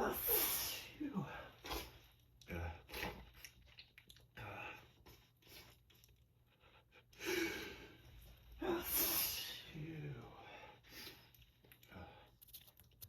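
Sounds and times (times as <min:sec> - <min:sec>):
small breaths: 0:10.4 - 0:12.5.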